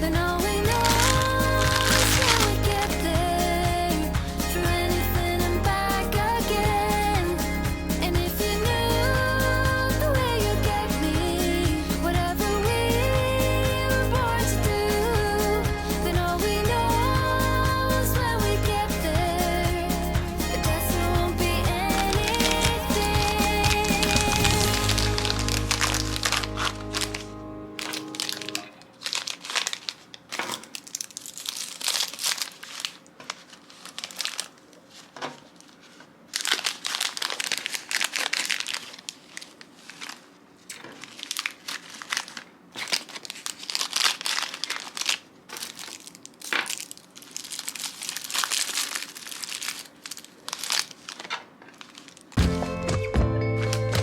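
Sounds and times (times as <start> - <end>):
plastic packaging crinkling: 0.0 - 3.0, 22.1 - 52.7.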